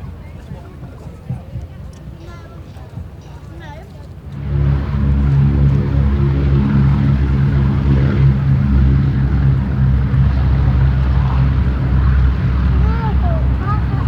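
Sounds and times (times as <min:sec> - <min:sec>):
radial aircraft engines droning: 0:01.9 - 0:14.0.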